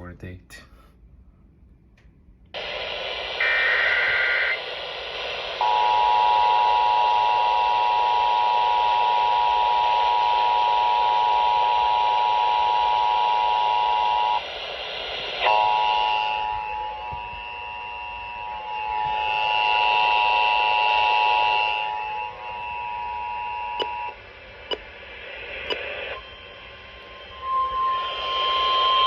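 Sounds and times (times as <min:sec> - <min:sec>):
radio static hiss: 0:02.6 - 0:29.0
warbling data tones: 0:15.5 - 0:29.0.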